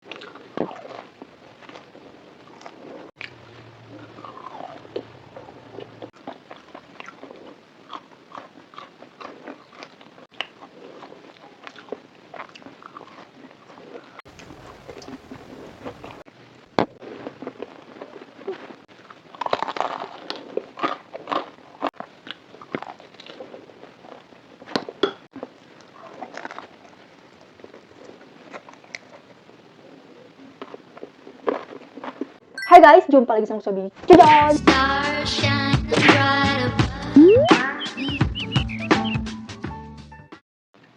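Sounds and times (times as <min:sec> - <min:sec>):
chewing crunchy fried food: 0:00.0 - 0:32.4.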